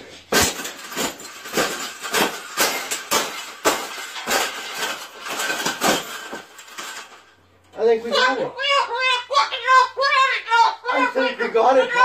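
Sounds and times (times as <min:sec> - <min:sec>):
wire cage clanking and rattling: 0:00.3 - 0:07.4.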